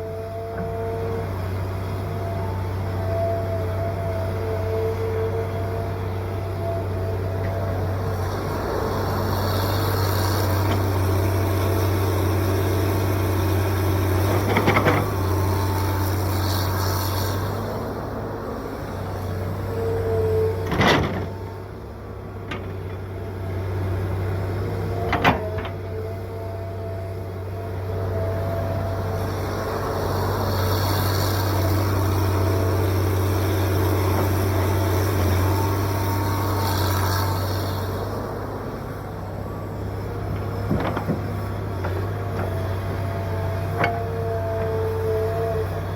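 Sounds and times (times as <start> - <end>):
excavator diesel engine running: 0.0 - 45.9.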